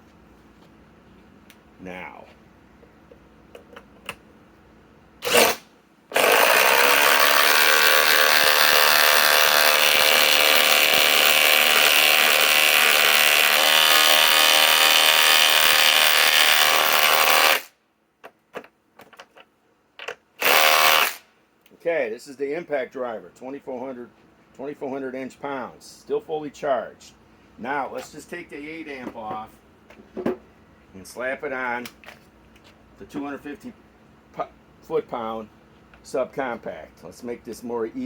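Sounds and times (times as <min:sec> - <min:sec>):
impact driver hammering screw: 0:05.2 - 0:17.7, 0:20.4 - 0:21.2.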